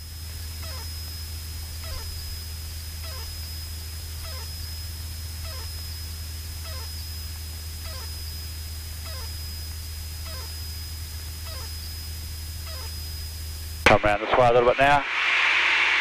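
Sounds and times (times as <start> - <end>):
aircraft engine drone: 0.0 - 16.0
falling chirp: 4.2 - 4.7, 5.4 - 5.9, 6.6 - 7.1, 7.8 - 8.4, 9.0 - 9.6, 10.2 - 10.8, 11.4 - 12.0, 12.6 - 13.2.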